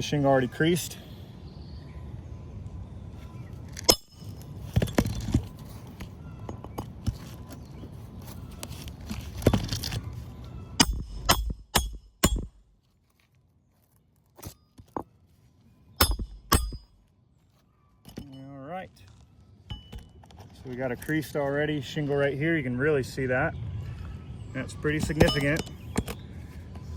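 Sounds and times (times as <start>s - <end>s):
tool scraping and handling: 3.7s - 10.3s, 18.1s - 21.6s, 24.9s - 26.8s
hammer striking metal: 10.8s - 12.6s, 16.0s - 16.9s, 25.0s - 26.2s.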